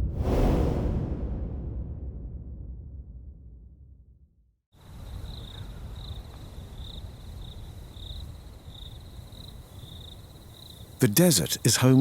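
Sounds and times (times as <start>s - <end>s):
low rushing background: 0.0s - 4.3s
insect trilling: 4.9s - 12.0s.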